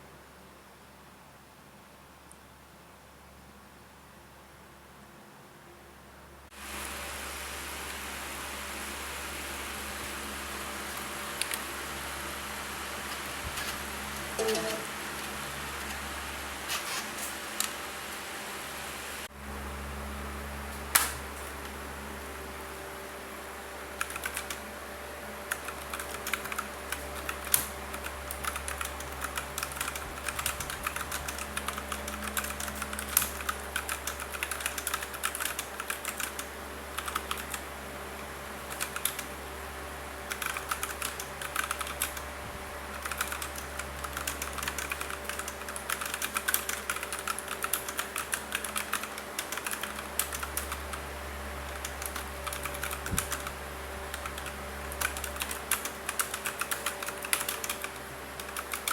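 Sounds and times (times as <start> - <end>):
mechanical keyboard typing: 24.0 - 24.6, 25.5 - 37.6, 38.7 - 39.3, 40.3 - 42.2, 42.9 - 51.0, 51.7 - 58.9.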